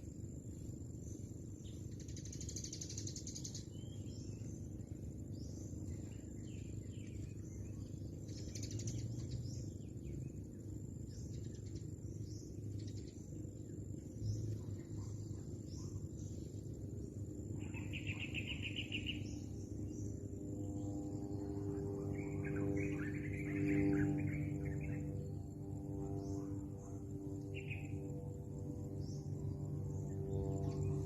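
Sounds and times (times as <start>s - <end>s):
birds chirping: 0.5s - 31.0s
bird trill: 17.6s - 20.1s, 20.7s - 25.4s, 26.1s - 28.0s.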